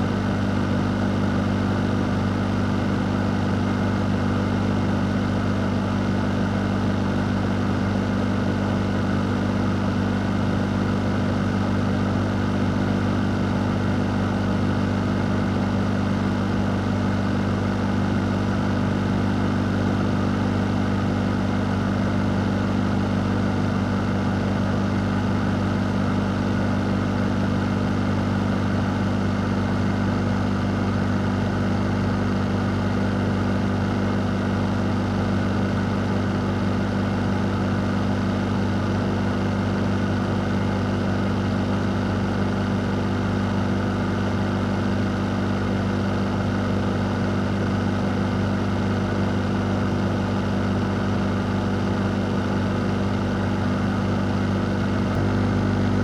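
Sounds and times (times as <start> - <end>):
low motor hum: 51.6 - 56.0
fan air rushing: 52.8 - 56.0.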